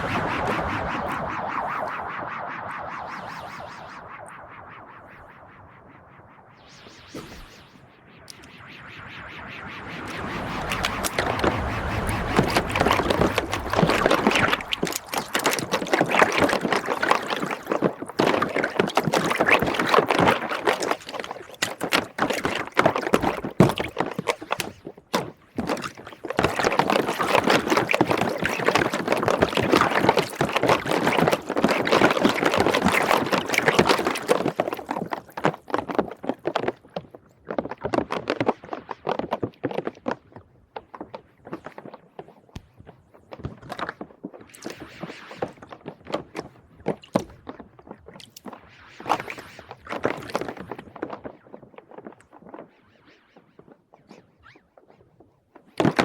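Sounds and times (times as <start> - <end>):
soapy water sloshing and bubbling: 10.1 - 51.3, 55.7 - 56.0
crackle of small clicks: 10.1 - 54.2.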